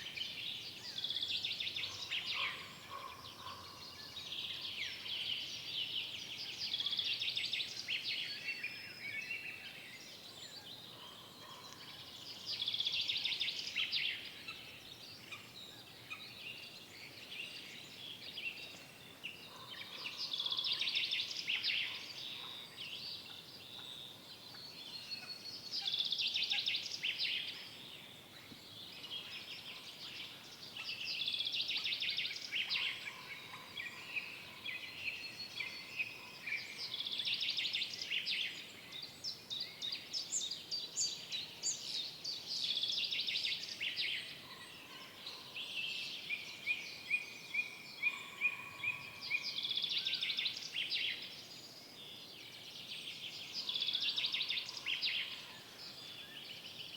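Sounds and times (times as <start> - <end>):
songbirds singing: 0.0 - 56.9.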